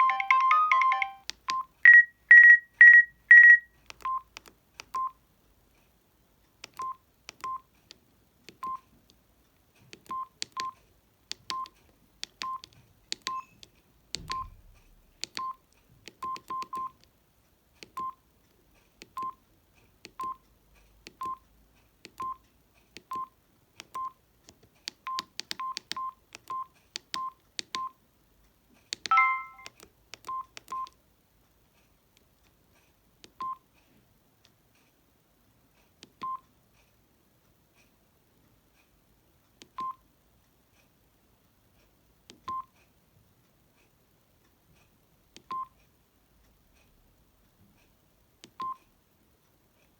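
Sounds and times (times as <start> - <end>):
phone keypad beeps: 0.0 - 4.3, 6.8 - 7.6, 11.5 - 11.8, 12.4 - 13.6, 14.2 - 14.6, 15.3 - 15.6, 16.2 - 17.0, 21.2 - 21.4, 25.1 - 28.0, 29.1 - 30.9, 36.2 - 36.4, 45.4 - 45.7
short multi-note phone tone: 29.1 - 29.7.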